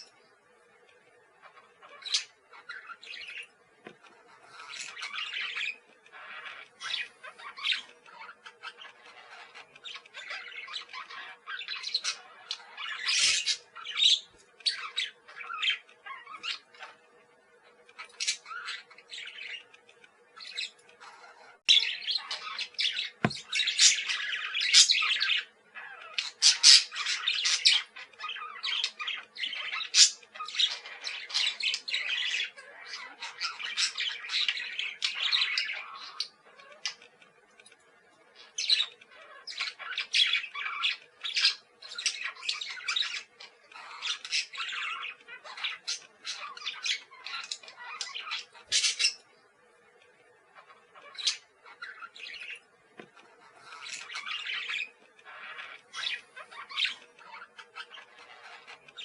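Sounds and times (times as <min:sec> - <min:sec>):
parakeets calling: 0:00.0 - 0:37.7, 0:38.3 - 0:59.0.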